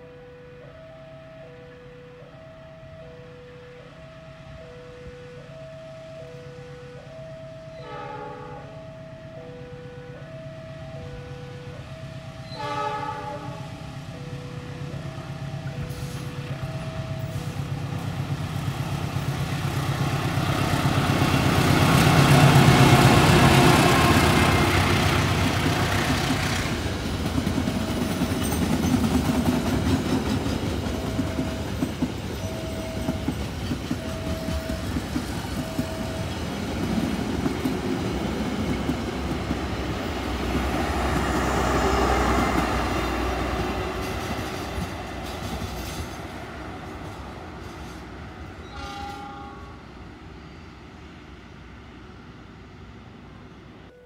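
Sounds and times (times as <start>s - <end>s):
locomotive engine hum: 0.0s - 54.0s
wheel clatter on rails: 42.5s - 46.4s.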